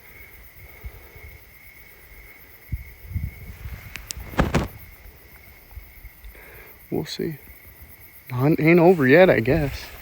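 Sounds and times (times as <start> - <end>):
crickets trilling: 0.0 - 10.0
loud rustling scrape: 4.1 - 4.8
low thumps: 4.1 - 4.9.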